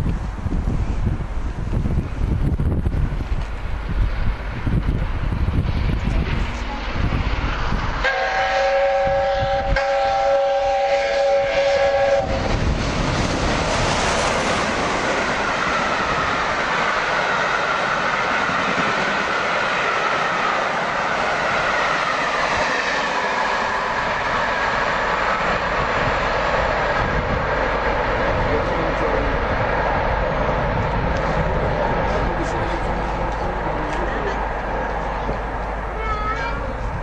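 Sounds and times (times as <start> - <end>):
train wheels rattling on rails: 0.0 - 37.0
steam locomotive whistle chord: 8.0 - 12.6.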